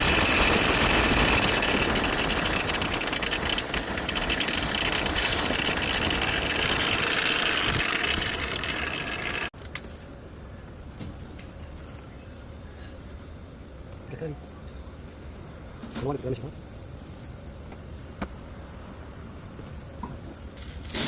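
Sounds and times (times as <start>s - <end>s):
car engine idling: 0.0s - 9.5s
rough whirring grind: 0.0s - 9.5s.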